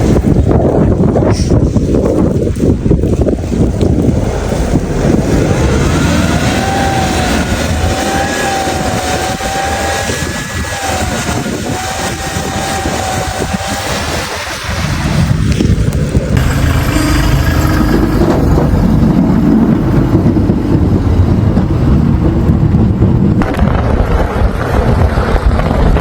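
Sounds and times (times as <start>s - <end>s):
vehicle engine rumbling: 0.0s - 26.0s
high whine: 3.8s - 24.2s.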